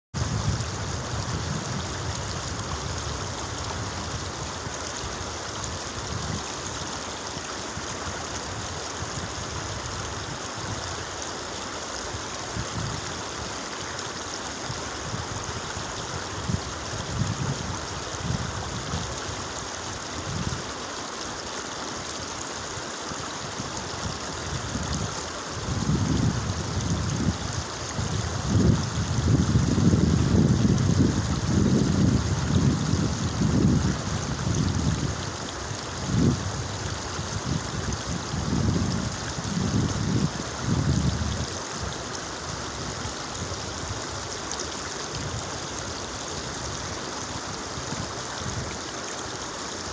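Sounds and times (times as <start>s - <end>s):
wind buffeting microphone: 0.2s - 6.8s, 14.7s - 19.4s, 24.0s - 41.9s
running water rushing: 0.2s - 49.9s.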